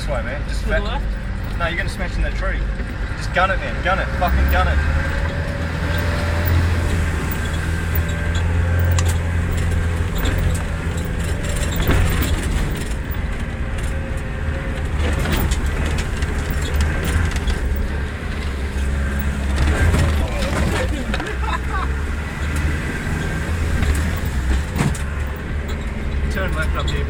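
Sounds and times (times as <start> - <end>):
diesel engine droning: 0.0 - 27.0.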